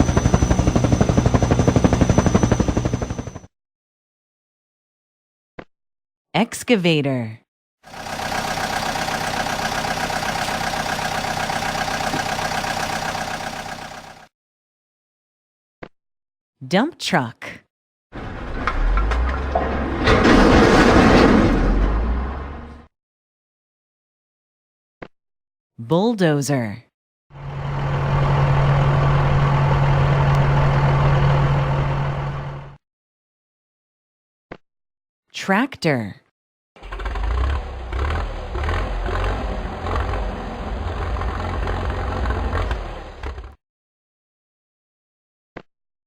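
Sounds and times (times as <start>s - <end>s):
excavator diesel engine running: 0.0s - 3.4s, 7.9s - 14.3s, 27.4s - 32.8s, 36.8s - 43.5s.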